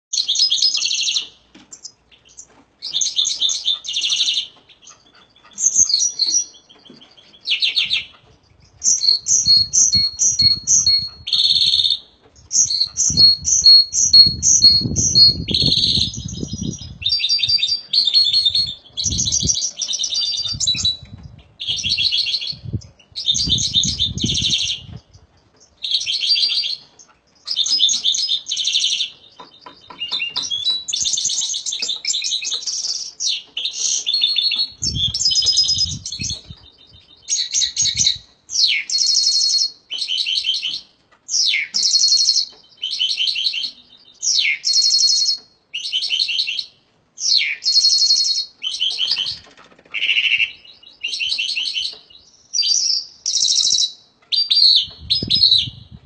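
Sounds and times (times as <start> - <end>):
songbird singing trills: 0.1 - 56.0.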